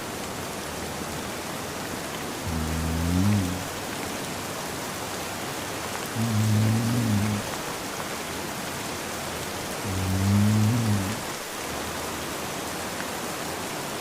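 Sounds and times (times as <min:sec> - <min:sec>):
steady rain: 0:00.0 - 0:14.0
man snoring: 0:02.5 - 0:03.7, 0:06.2 - 0:07.5, 0:09.8 - 0:11.3.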